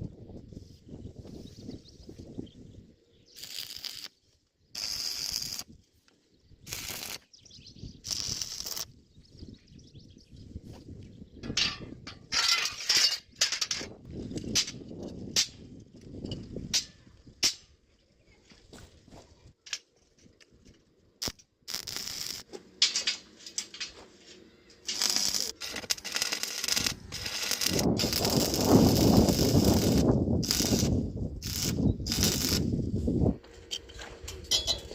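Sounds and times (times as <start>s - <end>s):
welding crackling hiss: 3.3s - 4.2s, 4.8s - 5.7s, 6.7s - 7.3s, 8.0s - 8.9s, 21.2s - 22.5s, 24.8s - 32.8s
iron pieces clinking: 11.4s - 13.9s, 33.7s - 34.9s.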